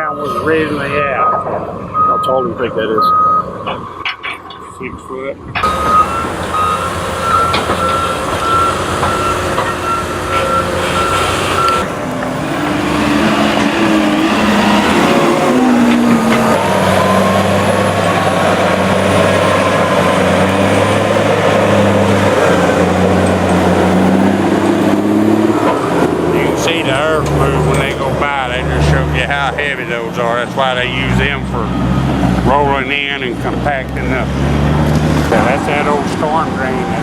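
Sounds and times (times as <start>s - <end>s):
reversing alarm beeping: 0.0s - 3.6s, 5.0s - 11.9s, 12.8s - 22.0s.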